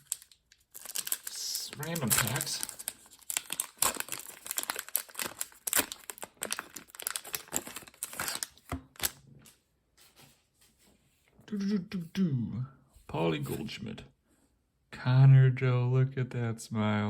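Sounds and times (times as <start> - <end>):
wrapper tearing and crinkling: 0.0 - 9.2.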